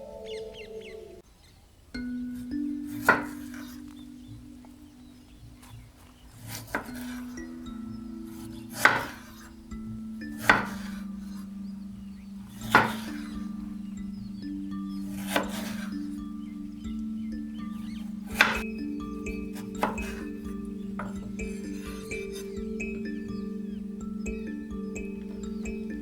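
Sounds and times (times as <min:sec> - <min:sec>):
music of slow held notes: 0:00.0 - 0:26.0
sharp ringing knocks: 0:06.7 - 0:26.0.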